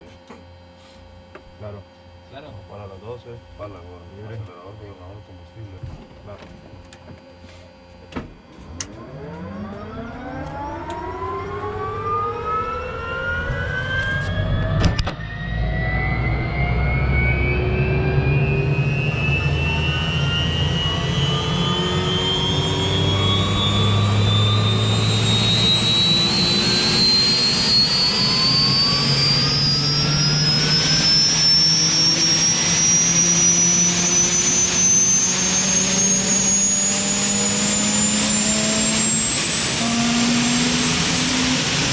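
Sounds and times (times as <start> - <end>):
helicopter turbine whine: 8.4 - 41.9.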